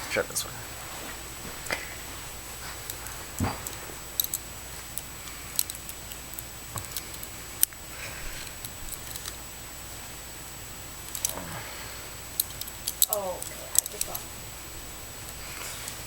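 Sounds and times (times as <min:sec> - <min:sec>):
handcuffs clicking and rattling: 0:02.6 - 0:07.8, 0:08.4 - 0:09.4, 0:11.0 - 0:11.4, 0:12.3 - 0:14.3.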